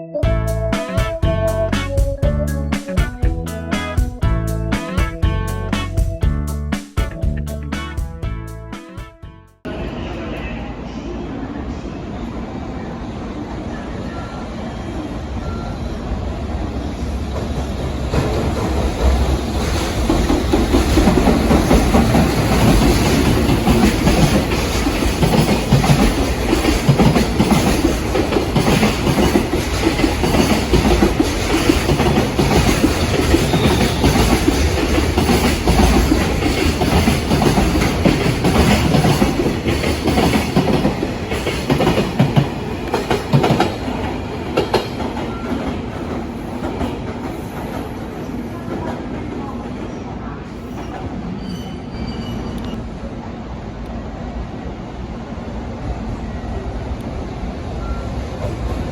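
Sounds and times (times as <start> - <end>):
train running gear rumble: 16.2 - 49.6
wagon wheels clicking over rail joints: 20.0 - 43.8.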